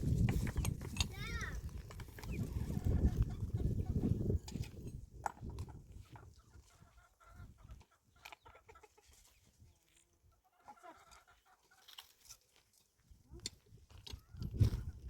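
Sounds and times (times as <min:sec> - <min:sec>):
chickens clucking faintly: 0:05.6 - 0:12.2.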